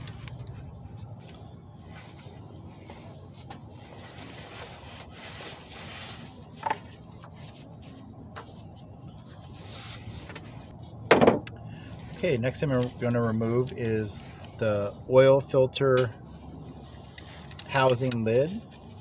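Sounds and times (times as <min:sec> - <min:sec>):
faint rubbing and shuffling: 0:00.0 - 0:11.1, 0:11.8 - 0:19.0.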